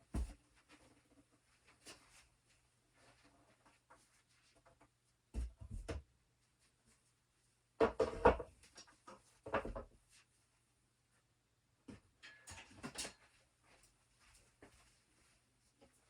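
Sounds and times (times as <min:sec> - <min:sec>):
wooden objects knocking and clattering: 0:07.8 - 0:10.0.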